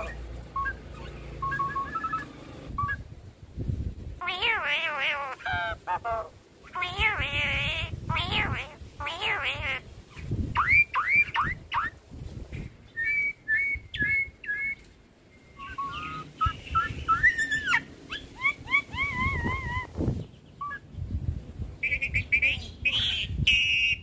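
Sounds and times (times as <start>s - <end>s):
starling singing whistled notes: 0.0s - 3.1s, 12.9s - 20.9s, 21.8s - 24.0s.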